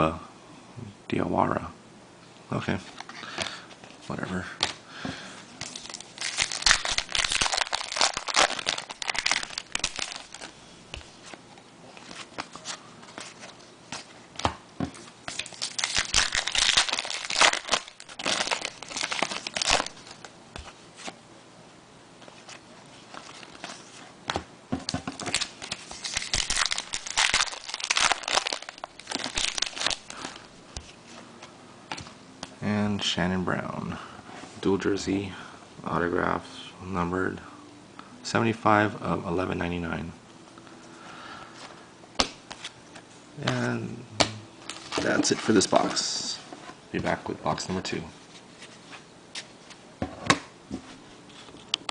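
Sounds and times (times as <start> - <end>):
wrappers crinkling and tearing: 5.6 - 10.6, 15.2 - 20.3, 25.2 - 30.5.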